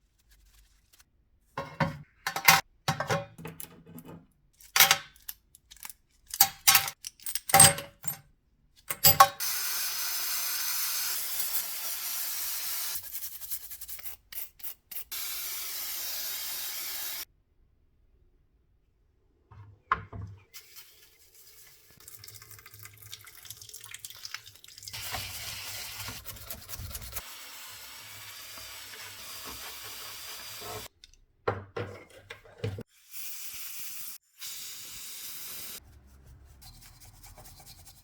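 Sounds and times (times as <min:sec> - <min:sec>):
water splashing in a sink: 0:20.6 - 0:27.2.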